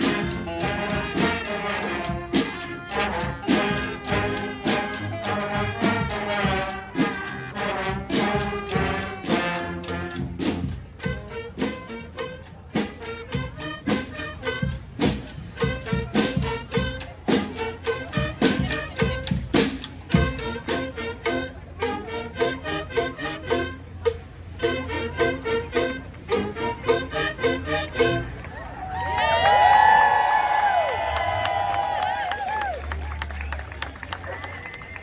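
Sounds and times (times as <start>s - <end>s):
steady drumbeat: 0.0s - 21.5s
street brass band playing: 0.0s - 35.0s.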